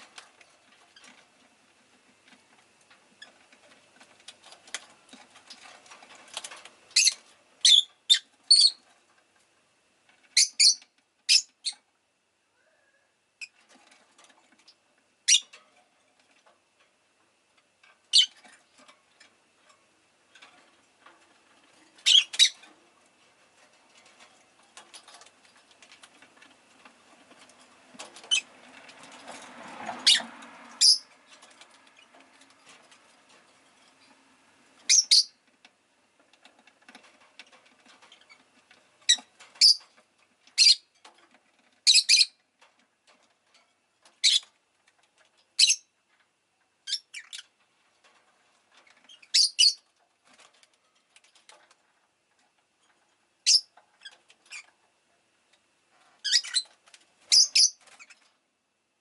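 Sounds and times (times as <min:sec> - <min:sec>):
lovebird chirping: 0:10.4 - 0:11.8, 0:30.8 - 0:31.1, 0:34.9 - 0:35.4, 0:49.2 - 0:49.8, 0:57.3 - 0:58.2.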